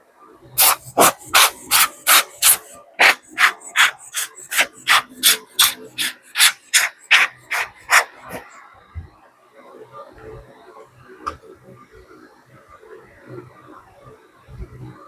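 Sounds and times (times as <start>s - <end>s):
short rasping strokes: 0.6s - 8.5s.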